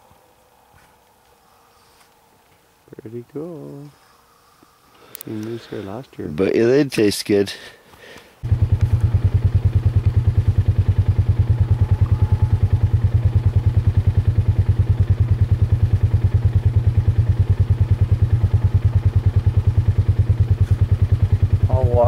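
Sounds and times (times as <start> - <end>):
vehicle engine throbbing: 8.4 - 22.0.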